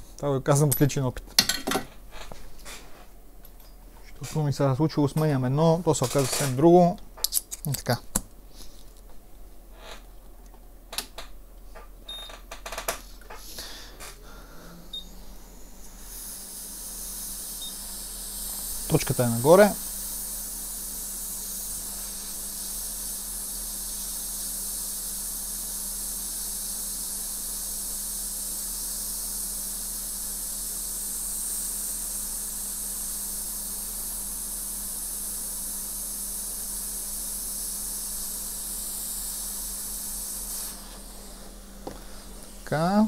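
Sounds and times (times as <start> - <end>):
hot air station hissing: 12.7 - 43.0.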